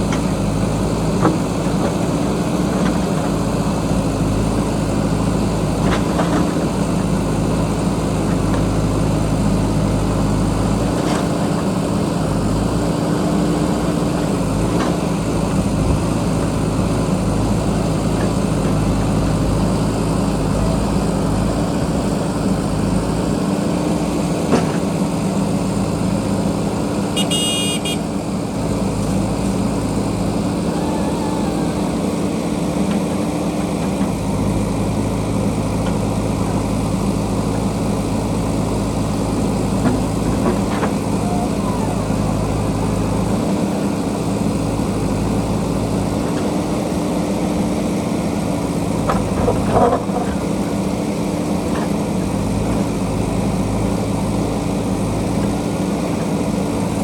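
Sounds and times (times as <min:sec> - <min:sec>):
diesel engine running: 0:00.0 - 0:57.0
high-pitched tone: 0:27.2 - 0:28.0.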